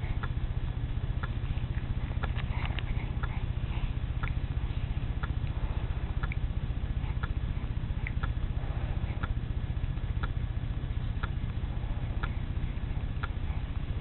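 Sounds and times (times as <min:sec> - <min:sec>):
low rumble: 0:00.0 - 0:14.0
clock ticking: 0:02.2 - 0:03.4, 0:05.1 - 0:05.6, 0:06.2 - 0:06.4.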